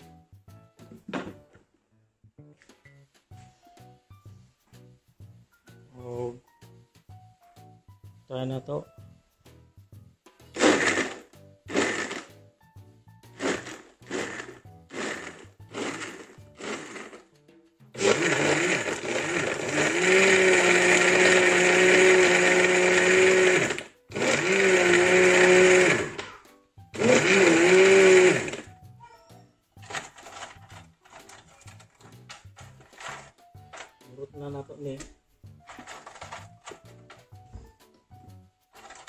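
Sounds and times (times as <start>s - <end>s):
blender crushing ice: 10.5s - 12.4s, 13.3s - 17.3s, 18.0s - 26.4s, 27.0s - 28.7s, 29.8s - 31.8s, 32.8s - 33.9s, 35.7s - 36.8s, 38.7s - 39.0s.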